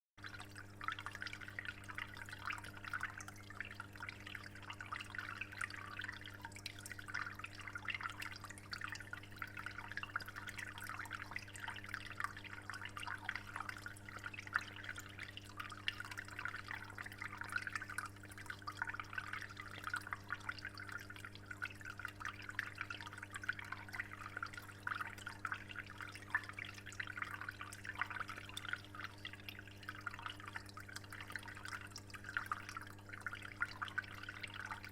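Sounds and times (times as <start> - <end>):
aquarium water trickling: 0.2 - 34.9.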